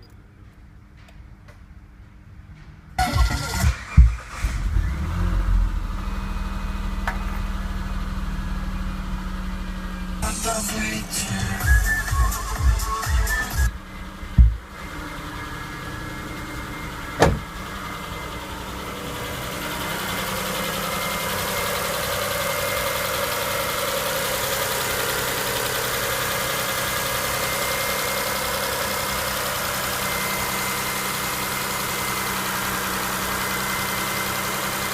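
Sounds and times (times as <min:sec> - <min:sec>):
engine idling: 0:03.0 - 0:34.9
sharp engine knock: 0:14.4 - 0:14.6.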